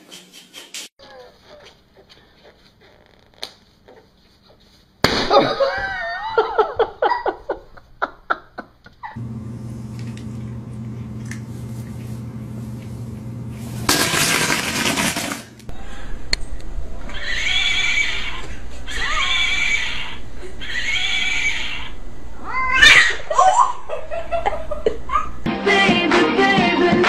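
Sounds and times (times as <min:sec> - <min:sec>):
cat yowling: 0:17.1 - 0:23.3.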